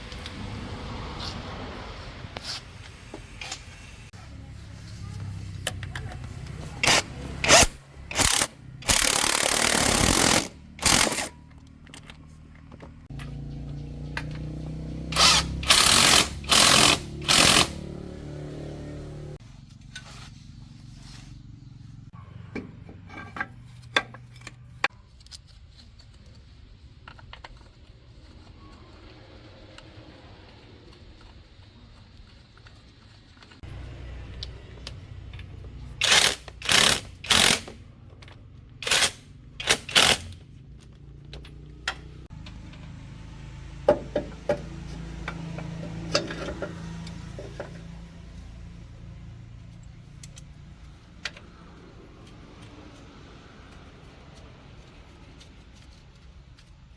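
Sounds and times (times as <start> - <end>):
power tool bursts: 6.8 - 11.3, 15.1 - 17.8, 36.0 - 37.8, 38.8 - 40.4.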